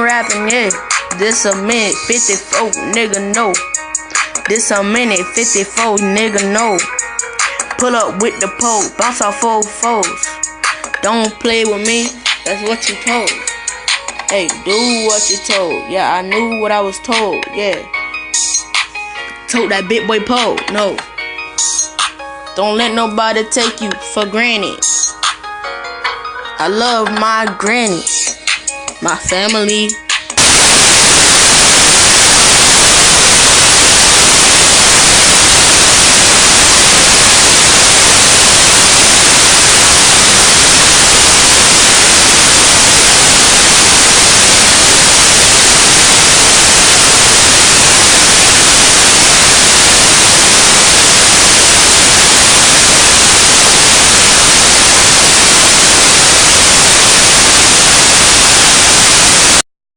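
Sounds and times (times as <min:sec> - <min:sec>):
static hiss: 0:00.0 - 0:05.8, 0:30.1 - 0:59.7.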